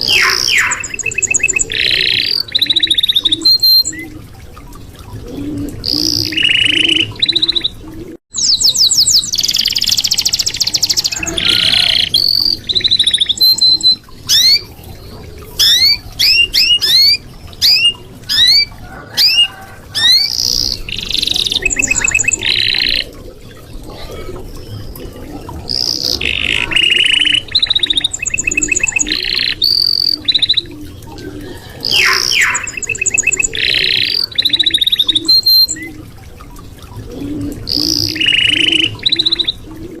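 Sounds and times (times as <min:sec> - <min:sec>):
canary singing: 0:00.0 - 0:03.9, 0:31.9 - 0:34.4.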